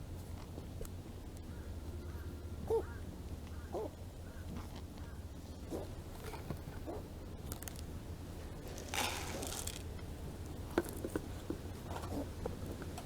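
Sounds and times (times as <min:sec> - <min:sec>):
kittens crunching dry food: 0:07.4 - 0:13.0.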